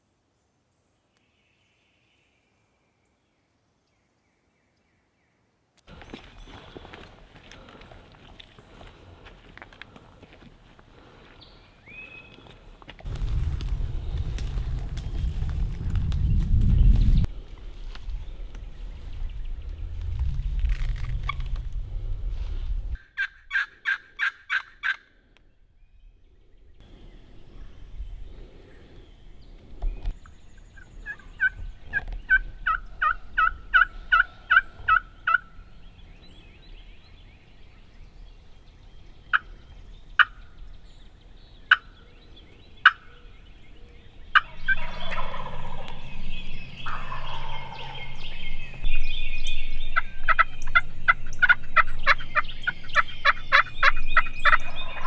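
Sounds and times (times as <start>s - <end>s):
turkey gobble: 23.0s - 25.1s, 31.0s - 35.5s, 44.3s - 48.8s, 49.7s - 55.0s
turkey clucks: 23.1s - 25.0s, 31.0s - 35.5s, 41.7s - 41.9s, 44.3s - 48.8s, 49.7s - 55.0s
turkey yelps: 23.1s - 25.0s, 44.4s - 48.6s, 49.9s - 55.0s.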